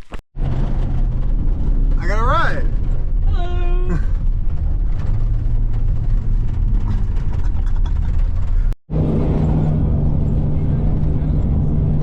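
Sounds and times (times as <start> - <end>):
engine and road rumble: 0.0 - 12.0.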